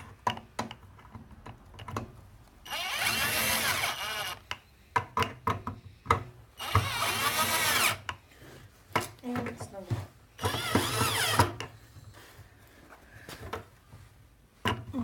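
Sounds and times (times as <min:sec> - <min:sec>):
handling clicks and knocks: 0:00.0 - 0:02.4
power drill driving screws: 0:02.6 - 0:04.5, 0:06.6 - 0:08.1, 0:10.4 - 0:11.6.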